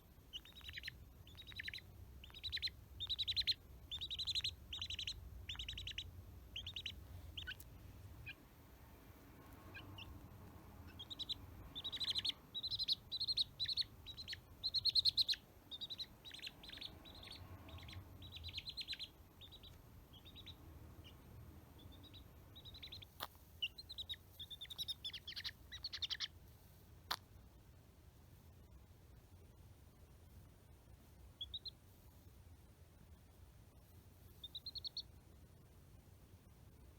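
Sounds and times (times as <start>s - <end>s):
chick peeping: 0.0s - 8.5s, 9.3s - 26.4s, 31.4s - 31.8s, 34.2s - 35.2s.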